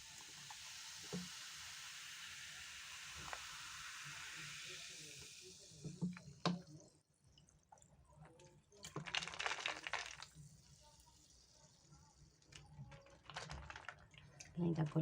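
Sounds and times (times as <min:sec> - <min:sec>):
soda fizzing over ice: 0:00.0 - 0:06.9, 0:08.8 - 0:15.0.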